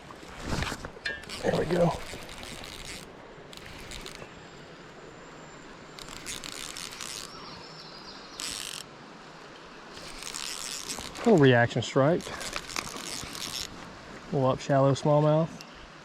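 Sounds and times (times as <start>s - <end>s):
fishing reel clicking and whirring: 1.2s - 4.3s, 6.0s - 7.4s, 8.4s - 8.9s, 10.0s - 11.5s, 12.2s - 13.8s.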